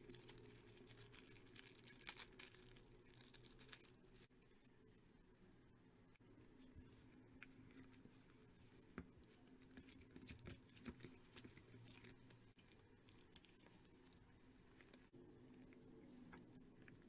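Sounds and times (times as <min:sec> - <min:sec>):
package rustling: 0:00.0 - 0:04.0.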